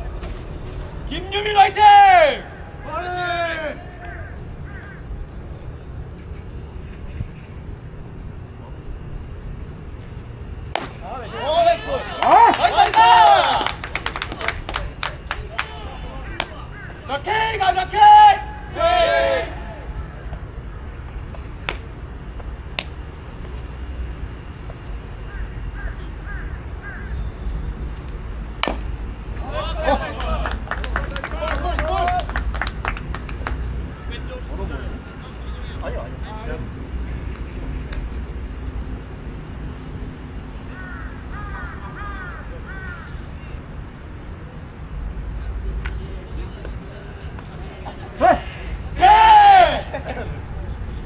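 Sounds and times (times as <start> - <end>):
wind rumble: 0.0 - 51.0
crow cawing: 2.5 - 5.3, 16.2 - 17.2, 25.0 - 27.5, 40.6 - 43.6
faint bird chirps: 6.1 - 7.9, 24.8 - 27.8
sharp cracks: 21.6 - 23.5.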